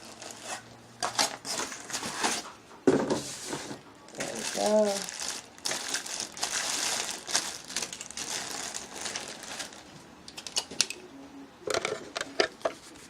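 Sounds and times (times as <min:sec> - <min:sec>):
packaging rustling and crinkling: 0:00.0 - 0:02.5, 0:03.1 - 0:10.0.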